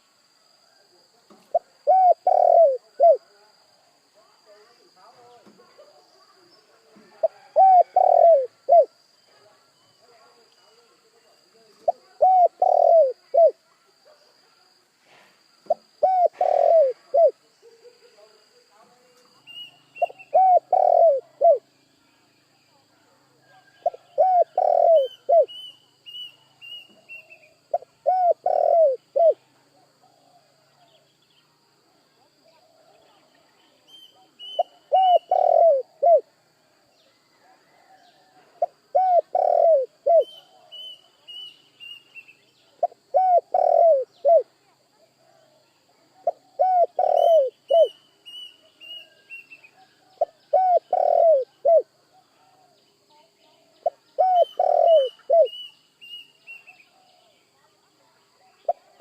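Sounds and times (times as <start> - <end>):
dove cooing: 1.5 - 3.4, 7.1 - 9.0, 11.8 - 13.6, 15.7 - 17.4, 20.0 - 21.7, 23.6 - 25.7, 27.0 - 29.5, 34.1 - 36.4, 37.4 - 41.0, 42.8 - 44.6, 46.2 - 48.0, 49.8 - 52.8, 53.8 - 55.7
small bird chirping: 15.6 - 22.8, 23.4 - 29.5, 32.2 - 36.2, 38.0 - 59.0.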